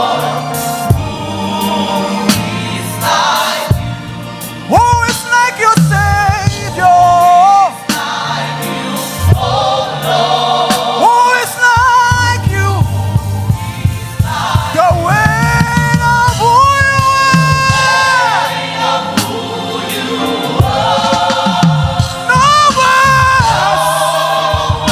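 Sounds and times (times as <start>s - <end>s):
gospel choir singing: 0.0s - 24.9s
live band playing: 0.0s - 24.9s
steady bass line: 12.0s - 18.0s.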